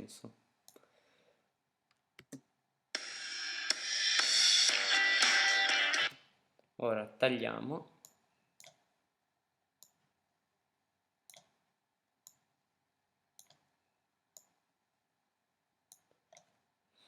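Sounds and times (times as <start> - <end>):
computer mouse clicks: 8.0 - 8.8, 11.3 - 11.6, 13.4 - 13.7, 15.9 - 16.5.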